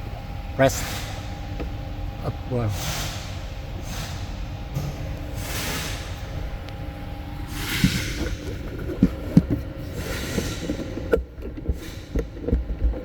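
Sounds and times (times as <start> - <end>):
short hissing puffs: 0.7 - 1.4, 2.7 - 4.4, 5.3 - 6.5, 7.5 - 8.3, 10.0 - 10.8.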